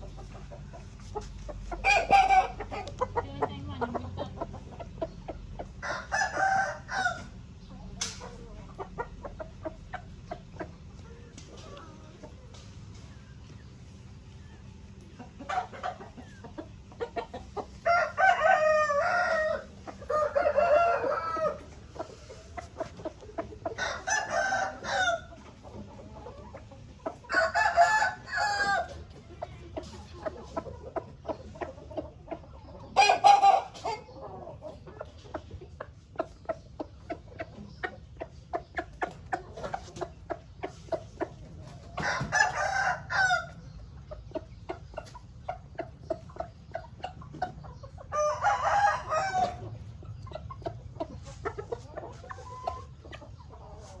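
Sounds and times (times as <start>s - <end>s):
rooster clucking: 0.0s - 54.0s
rooster crowing: 5.8s - 7.3s, 17.9s - 21.7s, 23.8s - 25.2s, 27.3s - 28.9s, 42.0s - 43.5s, 48.1s - 49.6s.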